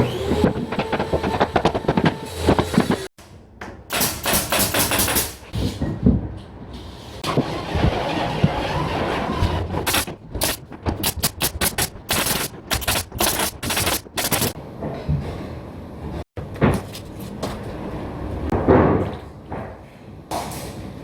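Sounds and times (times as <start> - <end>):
rapid sharp knocks: 3.9 - 5.4, 9.9 - 14.6.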